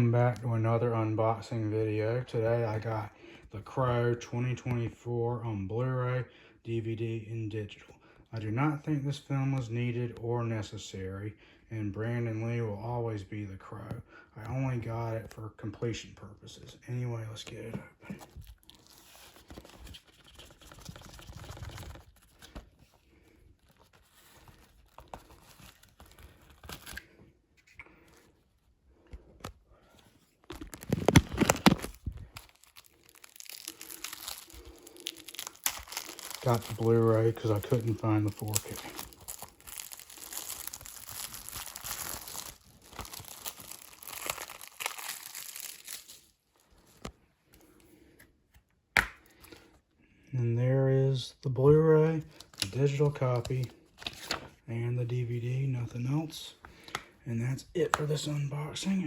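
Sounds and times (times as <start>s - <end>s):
plastic wrap crinkling: 18.2s - 28.6s, 30.2s - 47.8s, 52.3s - 54.6s.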